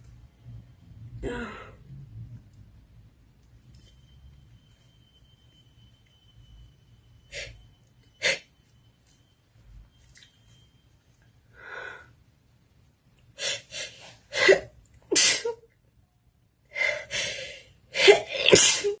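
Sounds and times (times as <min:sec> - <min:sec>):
woman sneezing: 0:14.3 - 0:15.6, 0:18.0 - 0:19.0.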